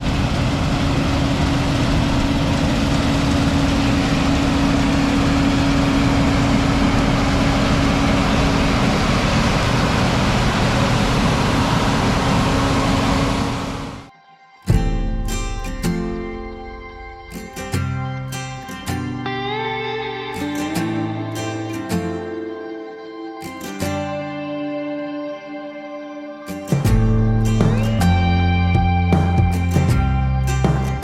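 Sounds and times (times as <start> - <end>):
constant whine: 0.0 - 14.1, 14.7 - 31.0
farm machine engine running: 0.0 - 14.1.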